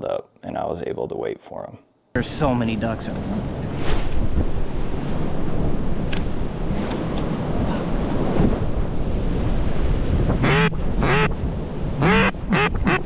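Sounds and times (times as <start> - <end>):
wind buffeting microphone: 2.4 - 13.0
duck quacks: 10.4 - 11.3, 12.0 - 13.0.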